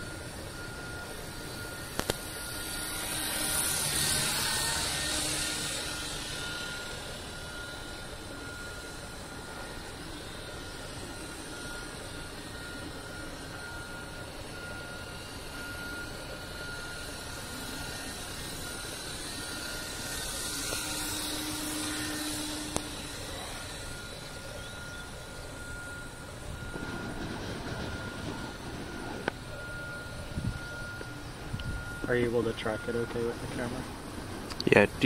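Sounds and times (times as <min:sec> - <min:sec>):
model helicopter rotor whir: 0:00.0 - 0:35.0.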